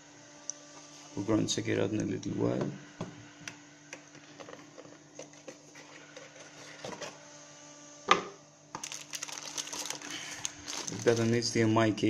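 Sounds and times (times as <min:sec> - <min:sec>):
plastic wrapping crinkling: 0:08.8 - 0:11.6.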